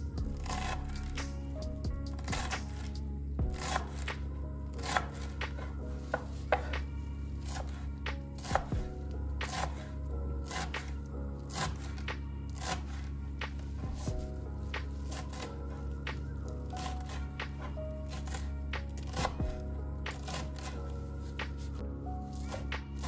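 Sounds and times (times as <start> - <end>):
soft background music: 0.0 - 23.0
knife chopping on cutting board: 2.2 - 2.9, 3.5 - 4.2, 4.8 - 7.8, 8.4 - 9.9, 10.5 - 15.5, 16.2 - 20.8.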